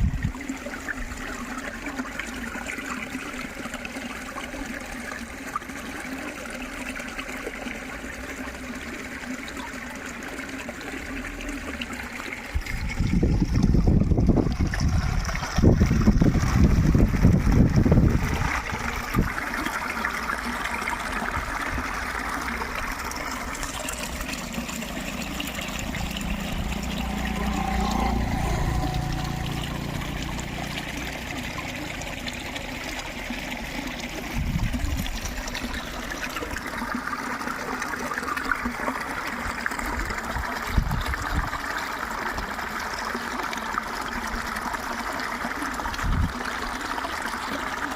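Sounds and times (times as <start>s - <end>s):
water trickling: 0.0s - 47.9s
low hum: 22.5s - 32.8s
heavy low rumbling: 23.5s - 32.1s.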